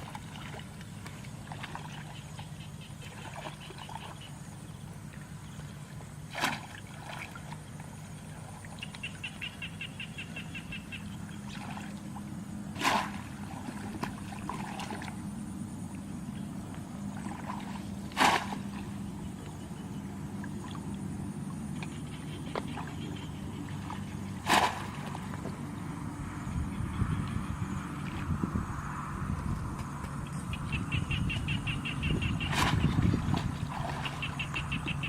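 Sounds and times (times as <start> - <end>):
water splashing: 0.0 - 4.3, 5.0 - 9.6, 11.0 - 19.6, 20.2 - 26.0, 32.4 - 35.0
steady low hum: 0.0 - 35.0.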